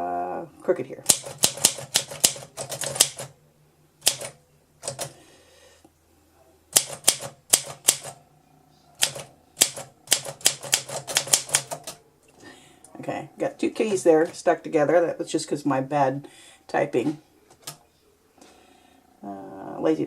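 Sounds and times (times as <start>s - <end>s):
typewriter keys clicking: 1.1s - 3.3s, 4.0s - 5.1s, 6.8s - 8.1s, 9.0s - 12.0s.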